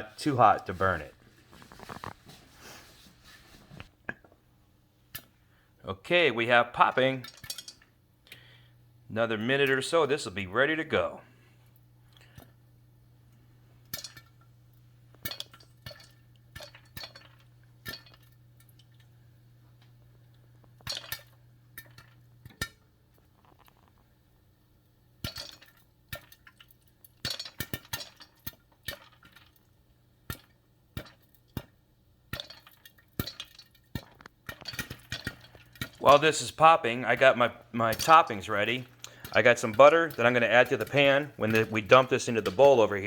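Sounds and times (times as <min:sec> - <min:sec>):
popcorn popping in oil: 0:06.1 - 0:11.2, 0:13.7 - 0:43.0.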